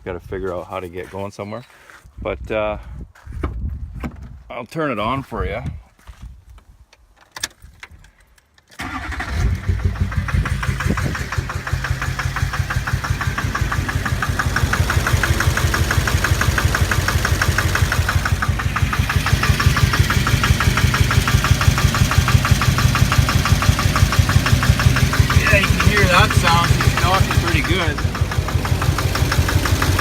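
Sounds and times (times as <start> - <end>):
diesel engine idling with knock: 9.6 - 30.0.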